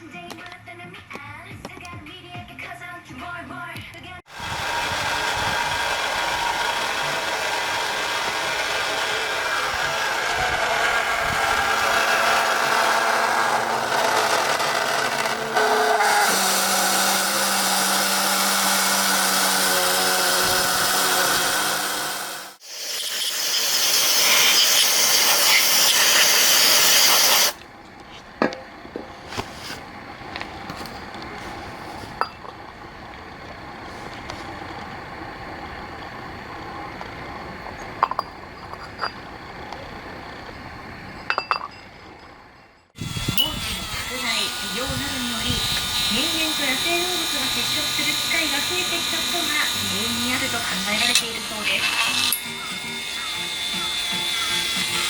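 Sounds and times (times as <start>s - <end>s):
small motor tool humming: 4.3s - 27.6s, 43.0s - 55.0s
loud hiss: 15.8s - 27.6s.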